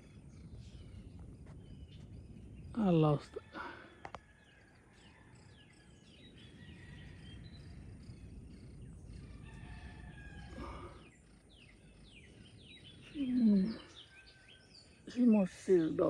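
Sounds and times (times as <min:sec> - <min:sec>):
birds chirping: 0:00.0 - 0:16.0
low steady rumble: 0:04.6 - 0:16.0.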